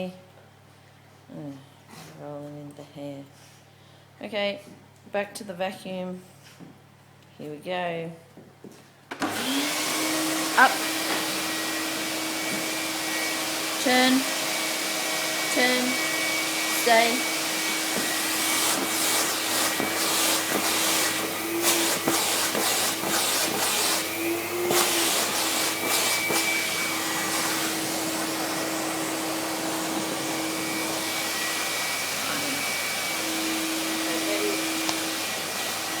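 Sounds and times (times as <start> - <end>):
vacuum cleaner running: 9.1 - 36.0.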